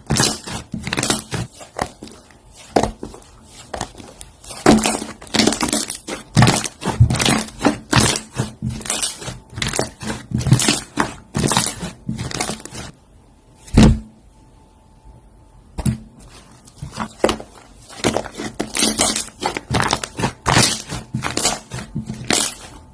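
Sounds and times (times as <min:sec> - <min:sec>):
slime crackling and popping: 0:00.0 - 0:03.1, 0:03.7 - 0:12.9, 0:16.9 - 0:22.7.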